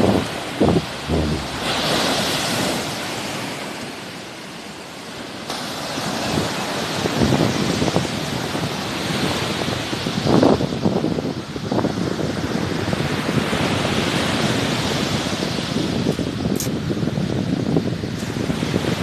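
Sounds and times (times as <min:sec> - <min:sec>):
wind buffeting microphone: 0:00.0 - 0:02.7
sea waves washing onto shore: 0:00.0 - 0:04.4.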